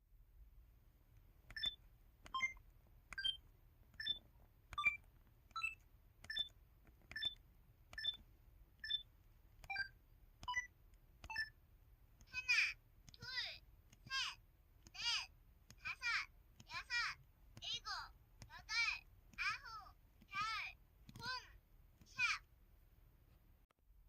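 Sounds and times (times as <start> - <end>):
phone keypad beeps: 1.5 - 8.2, 8.8 - 11.6.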